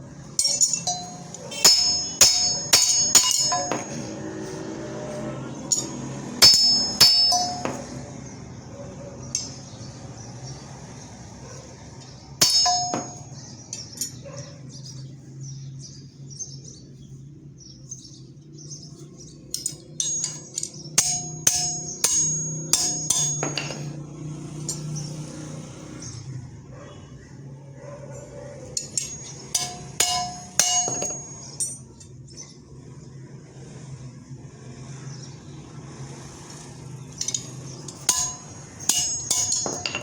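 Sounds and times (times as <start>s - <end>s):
hammer striking steel rod: 0.4s - 4.4s, 5.6s - 8.1s, 12.4s - 14.2s, 19.5s - 24.0s, 28.8s - 31.8s, 37.2s - 40.0s.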